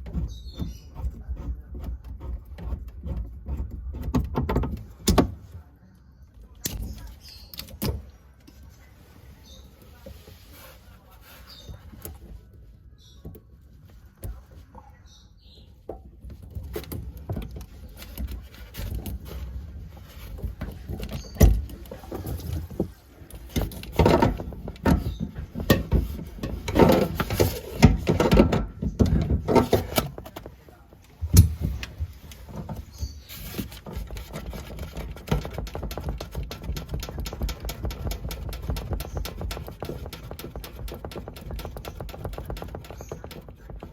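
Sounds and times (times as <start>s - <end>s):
tools knocking and clattering: 20.0s - 30.6s
rapid clicking: 34.2s - 43.9s.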